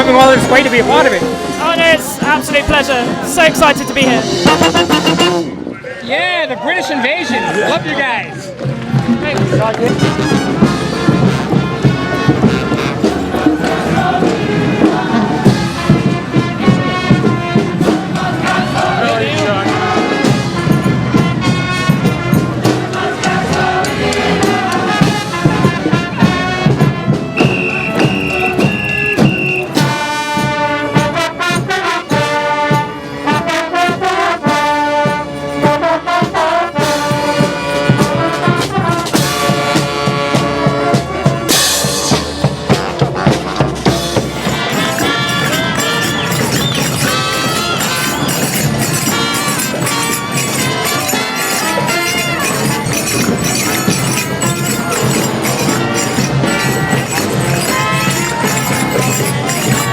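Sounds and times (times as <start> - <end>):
steady drum beat: 0.0 - 5.5, 41.0 - 59.9
trumpets and trombones: 0.0 - 5.8, 8.8 - 59.9.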